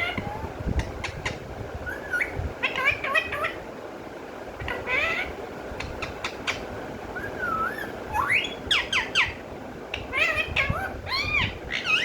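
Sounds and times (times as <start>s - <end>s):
parrot chattering call: 1.0s - 3.6s, 4.6s - 6.7s, 7.3s - 12.0s
parrot whistling: 7.2s - 9.3s.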